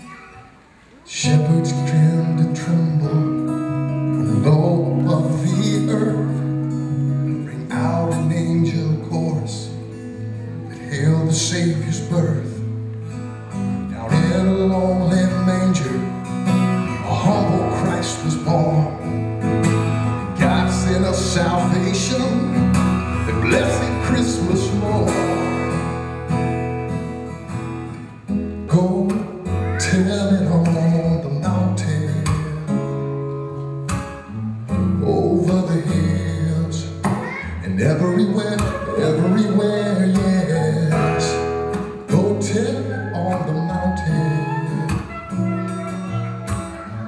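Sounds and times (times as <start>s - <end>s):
acoustic guitar strumming: 1.0s - 47.0s.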